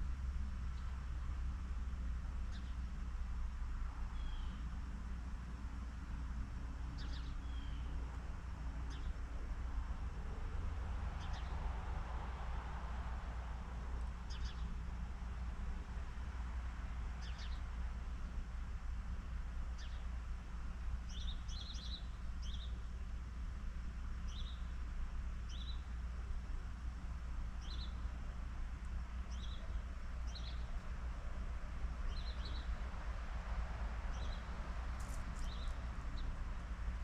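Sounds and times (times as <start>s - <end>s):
steady low rumble: 0.0s - 37.0s
small birds chirping: 2.4s - 2.9s, 4.1s - 4.8s, 6.9s - 8.0s, 8.8s - 9.2s, 11.2s - 11.6s, 14.2s - 14.8s, 17.2s - 17.8s, 19.2s - 23.0s, 24.0s - 24.8s, 25.4s - 26.0s, 27.5s - 31.0s, 32.0s - 32.9s, 34.0s - 36.4s.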